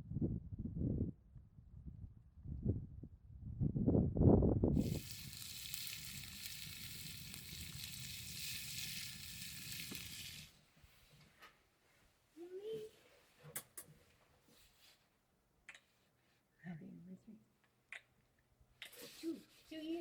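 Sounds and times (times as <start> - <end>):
steady high hiss: 4.8 - 11.0.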